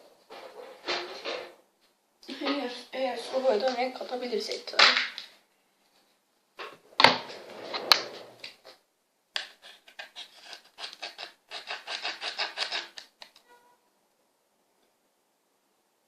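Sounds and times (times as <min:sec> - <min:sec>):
small clicks and rubbing: 0:09.4 - 0:13.5.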